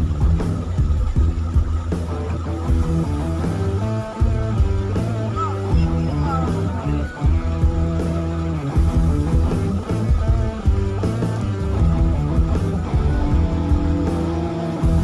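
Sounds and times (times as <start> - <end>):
guitar-led rock music: 0.0 - 15.0
steady bass: 0.0 - 15.0.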